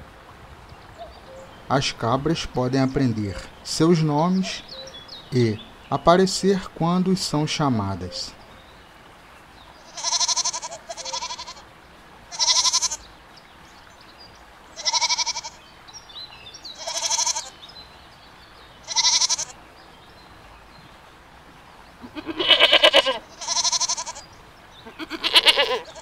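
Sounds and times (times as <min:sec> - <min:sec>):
goats bleating: 0:09.9 - 0:11.7, 0:12.3 - 0:13.0, 0:14.8 - 0:15.6, 0:16.8 - 0:17.6, 0:18.8 - 0:19.6, 0:22.0 - 0:26.0.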